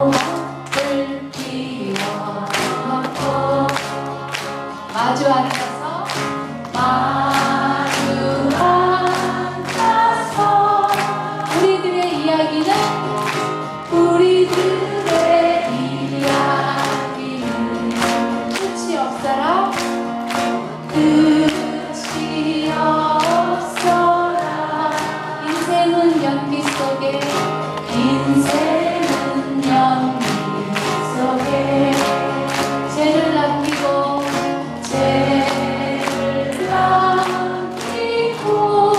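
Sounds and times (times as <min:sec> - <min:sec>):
people singing folk song: 0:00.0 - 0:38.9.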